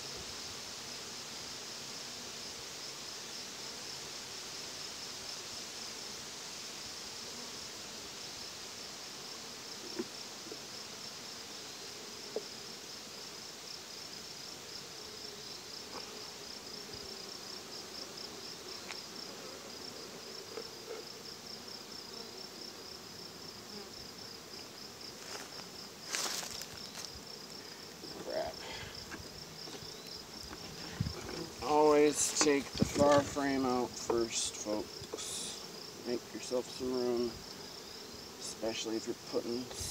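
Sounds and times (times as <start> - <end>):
honeybees buzzing: 0.0 - 39.9
high insect chirp pulsing: 13.7 - 39.9
scraping rustle: 25.2 - 28.3, 29.0 - 34.5.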